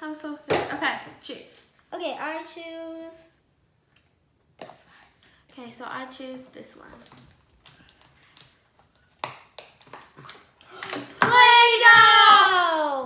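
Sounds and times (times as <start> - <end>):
child squealing: 11.2 - 13.0.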